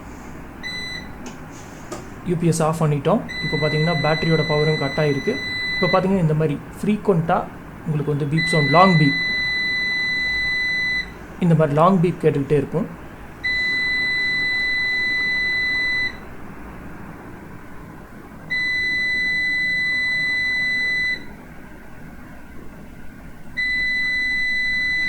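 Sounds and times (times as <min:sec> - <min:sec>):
high steady alarm beeps: 0:00.6 - 0:01.2, 0:03.2 - 0:06.3, 0:08.0 - 0:11.2, 0:13.4 - 0:16.3, 0:18.5 - 0:21.4, 0:23.6 - 0:25.0.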